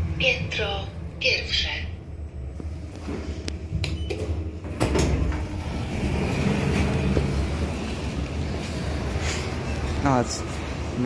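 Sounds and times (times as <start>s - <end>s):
elevator car low hum: 0.0s - 11.0s
elevator doors sliding: 2.7s - 11.0s.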